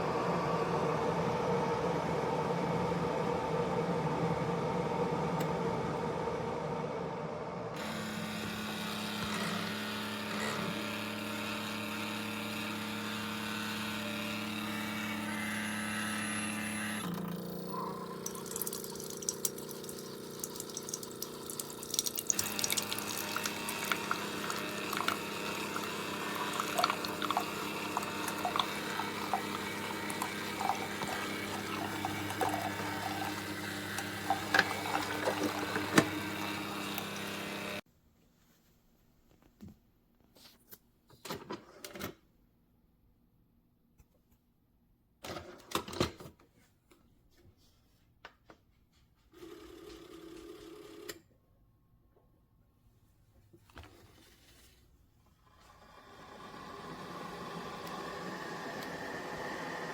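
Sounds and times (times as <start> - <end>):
coffee maker pump humming: 0.0 - 37.8, 55.6 - 59.9
coffee streaming into cup: 7.8 - 37.8.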